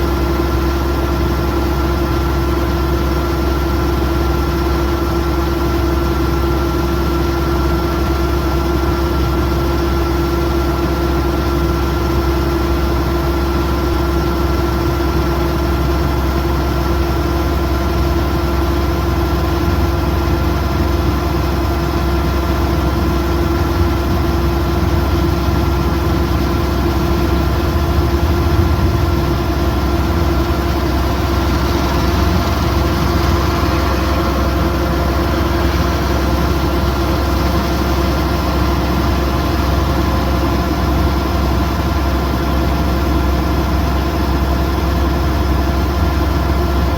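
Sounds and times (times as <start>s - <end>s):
combine harvester engine hum: 0.0s - 46.9s
machinery whine: 12.0s - 46.9s.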